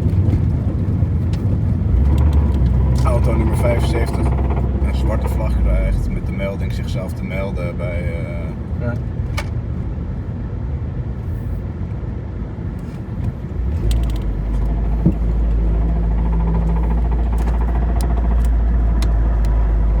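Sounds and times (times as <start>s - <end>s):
vehicle rumble: 0.0s - 20.0s
sharp clicks: 13.8s - 20.0s.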